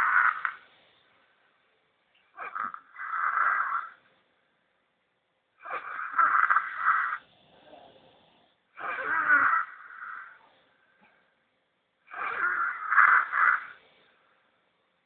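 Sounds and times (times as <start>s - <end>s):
boy snoring: 0.0s - 0.7s, 2.4s - 4.0s, 5.6s - 10.7s, 12.1s - 14.1s.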